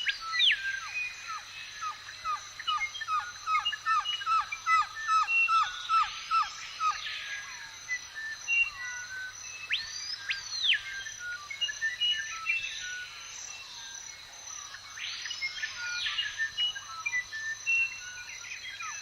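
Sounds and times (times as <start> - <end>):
birds singing in forest: 0.0 - 19.0.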